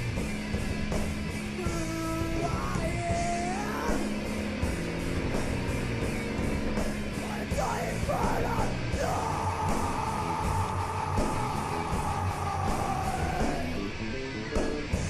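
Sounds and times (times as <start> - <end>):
steady drum beat: 0.0 - 13.8
rock music: 0.0 - 15.0
person yelling a long note: 1.6 - 4.0, 7.3 - 13.7.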